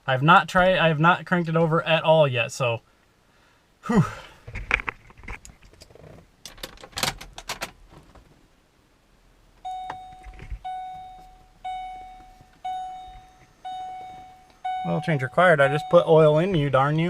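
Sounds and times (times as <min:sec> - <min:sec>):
dashboard warning chime: 0:09.6 - 0:17.0.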